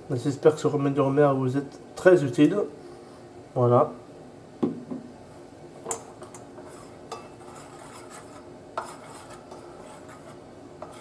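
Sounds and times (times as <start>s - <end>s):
spoon stirring thick honey: 6.3s - 11.0s.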